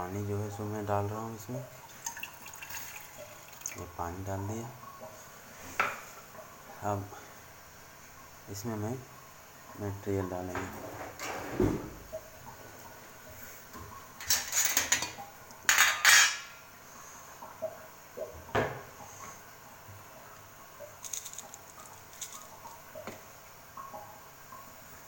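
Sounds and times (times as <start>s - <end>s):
metal utensils clattering in saucepan: 14.2s - 16.5s.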